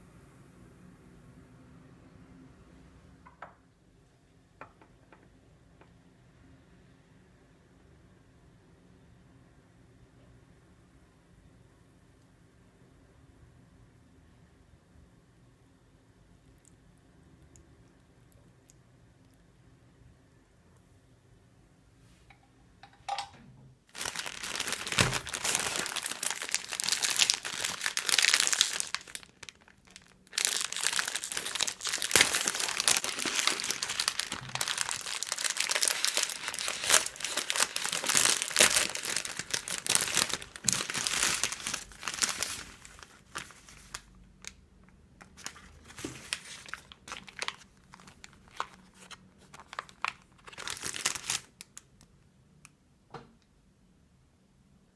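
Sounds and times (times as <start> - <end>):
packaging crinkling and tearing: 23.9 - 44.6, 45.2 - 51.9.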